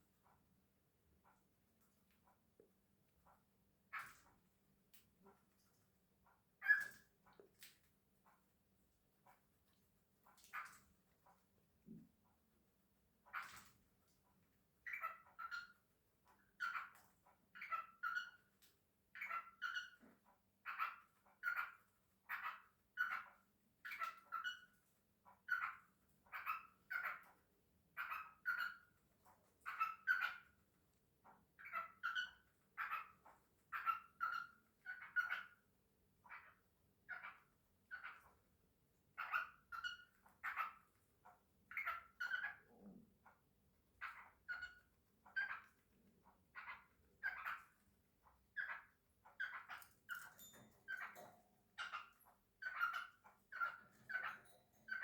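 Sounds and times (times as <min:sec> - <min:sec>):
cockatiels chirping: 0:06.6 - 0:07.0, 0:13.3 - 0:13.7, 0:14.8 - 0:30.6, 0:31.2 - 0:38.4, 0:39.1 - 0:43.4, 0:44.0 - 0:55.0.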